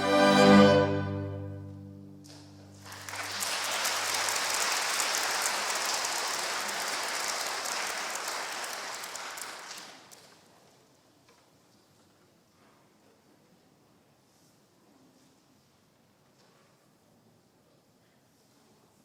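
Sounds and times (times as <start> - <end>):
string orchestra chord: 0.0 - 2.9
audience applause: 2.7 - 10.3.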